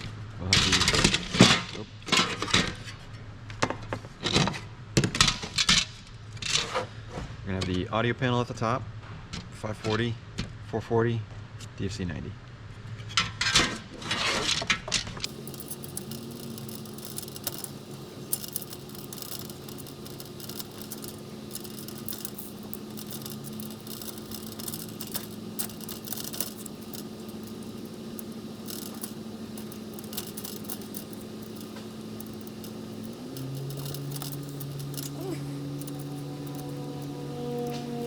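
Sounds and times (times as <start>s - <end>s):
low steady hum: 15.2s - 38.0s
metal clinks and scrapes: 15.2s - 38.0s.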